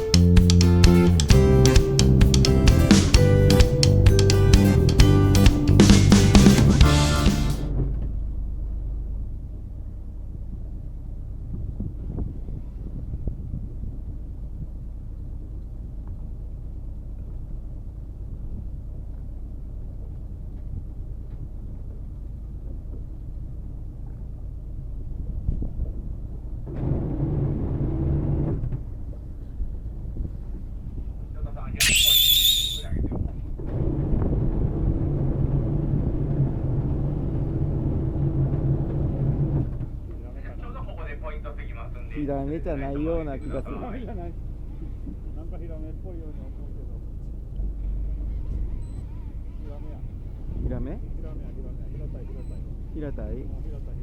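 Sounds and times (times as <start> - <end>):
boat engine rumbling: 0.0 - 13.2, 34.4 - 42.0, 43.1 - 54.0
sharp knock: 31.8 - 32.9.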